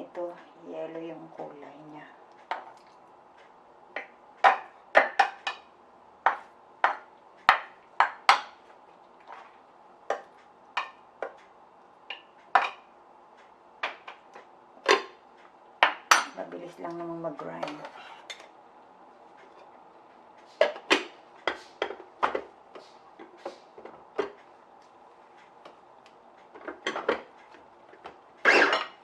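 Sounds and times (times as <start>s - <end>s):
utensils and dishes clinking: 26.6s - 27.4s, 28.4s - 29.0s.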